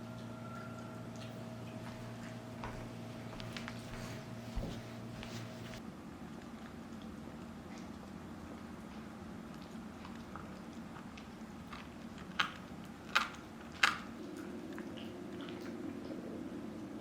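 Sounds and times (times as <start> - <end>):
low steady hum: 0.0 - 17.0
dog gnawing a chew: 9.0 - 15.9.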